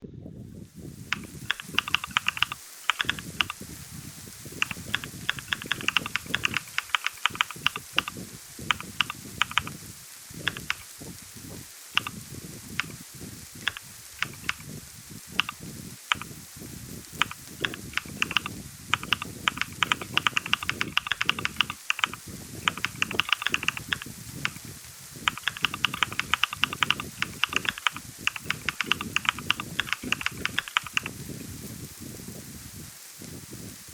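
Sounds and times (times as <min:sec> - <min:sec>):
computer keyboard typing: 0:01.1 - 0:03.6, 0:04.6 - 0:09.8, 0:10.4 - 0:10.9, 0:12.0 - 0:12.2, 0:12.8 - 0:13.0, 0:13.6 - 0:14.7, 0:15.4 - 0:16.3, 0:17.2 - 0:24.6, 0:25.2 - 0:31.2.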